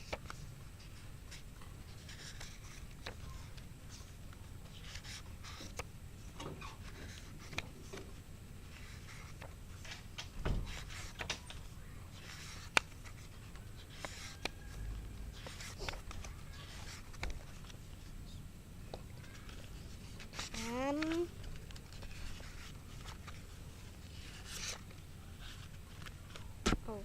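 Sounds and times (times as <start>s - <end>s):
paper pages rustling: 0.0s - 8.0s, 8.7s - 18.1s, 19.1s - 26.5s
dull thump: 10.4s - 10.8s.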